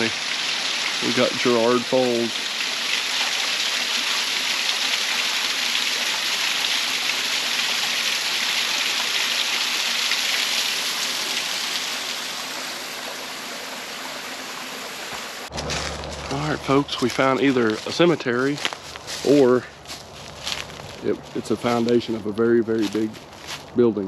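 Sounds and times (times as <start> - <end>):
waterfall splashing and rushing: 0.0 - 18.3.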